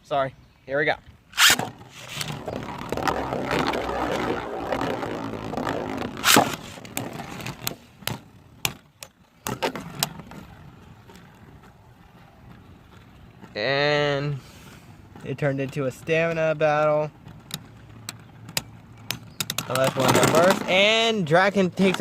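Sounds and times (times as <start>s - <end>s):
spinning tops grinding whir: 1.4s - 7.6s.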